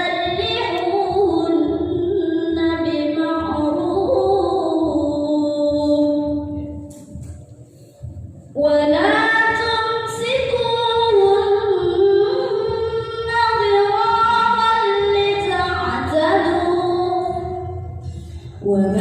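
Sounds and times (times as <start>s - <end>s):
woman chanting recitation: 0.0s - 6.9s, 18.6s - 19.0s.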